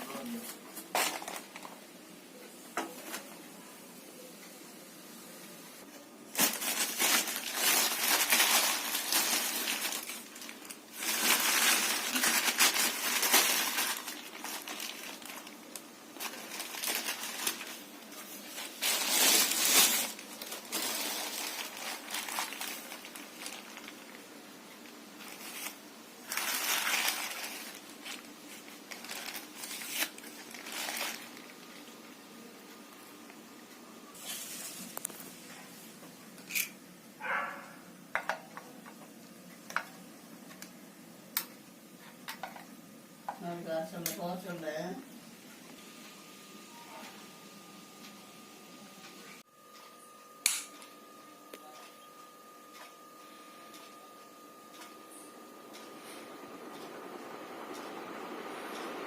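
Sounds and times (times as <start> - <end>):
packaging crinkling and rustling: 0.2 - 1.9, 6.3 - 32.0, 34.2 - 35.4.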